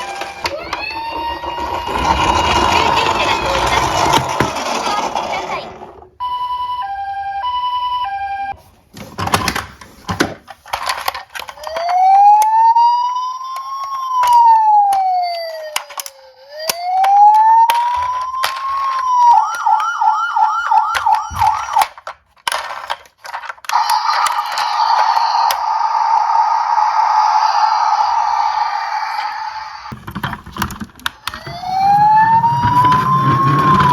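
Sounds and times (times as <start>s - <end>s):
emergency vehicle siren: 0.0s - 4.6s, 6.2s - 8.7s, 11.6s - 21.9s, 23.7s - 30.0s, 31.2s - 33.9s
toy cars clicking and rattling: 0.0s - 6.1s, 9.0s - 12.5s, 13.4s - 26.1s, 29.9s - 33.9s.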